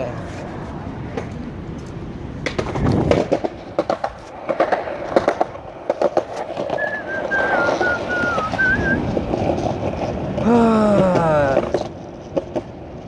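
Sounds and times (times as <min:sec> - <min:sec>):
skateboard rolling over pavement: 0:00.0 - 0:13.0
wheels clacking over joints: 0:00.0 - 0:13.0
wavering high whistle tone: 0:06.7 - 0:09.0.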